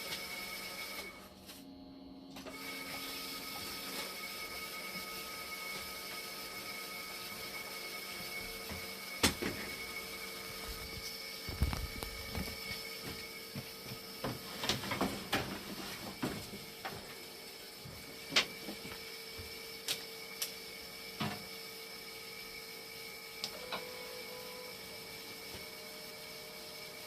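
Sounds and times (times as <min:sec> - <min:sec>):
steady electrical hum: 0:00.0 - 0:27.0.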